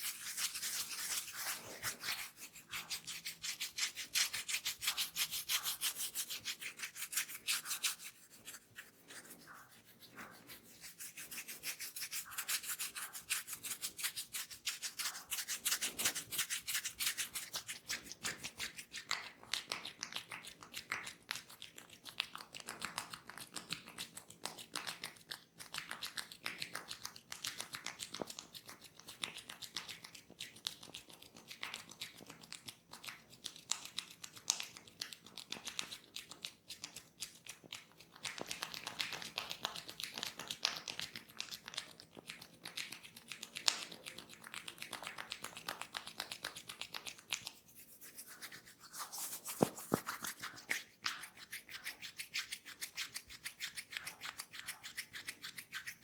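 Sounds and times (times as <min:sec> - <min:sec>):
hands rubbing hair and scalp: 0:00.0 - 0:19.0, 0:38.1 - 0:56.0.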